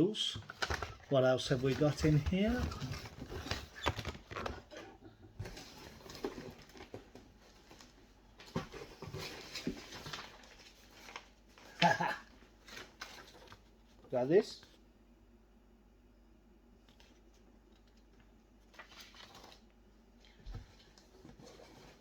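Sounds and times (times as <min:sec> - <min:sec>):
packaging rustling: 0:00.4 - 0:11.8, 0:18.6 - 0:19.7.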